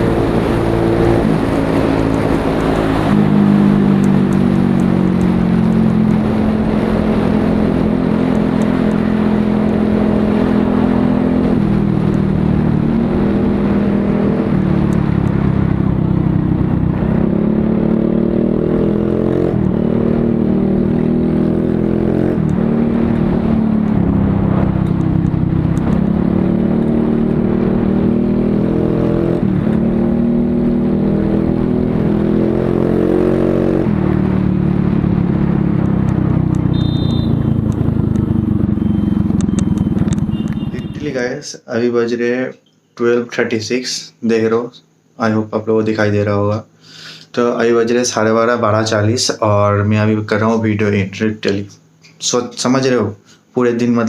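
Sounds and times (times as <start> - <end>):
scooter engine revving: 36.3 - 41.0.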